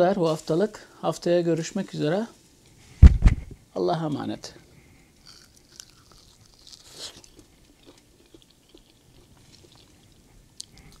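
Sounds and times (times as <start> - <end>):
person chewing and crunching: 5.2 - 11.0.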